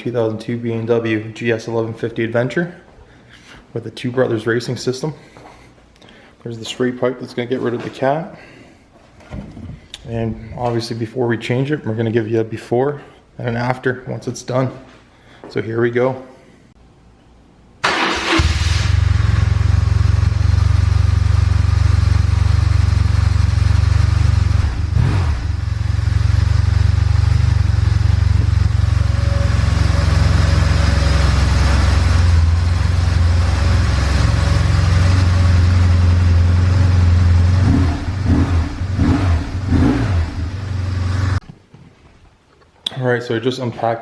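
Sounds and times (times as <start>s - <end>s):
motorcycle engine running: 18.9s - 41.4s.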